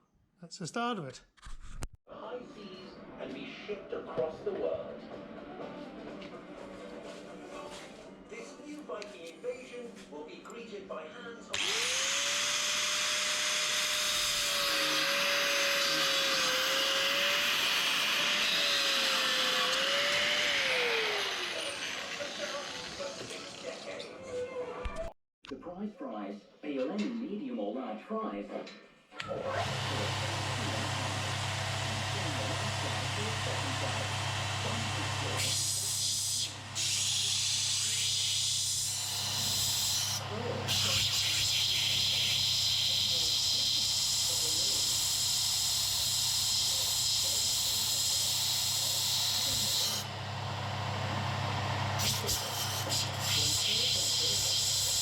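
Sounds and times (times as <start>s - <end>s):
power grinder grinding steel: 11.6s - 24.2s, 29.2s - 55.0s.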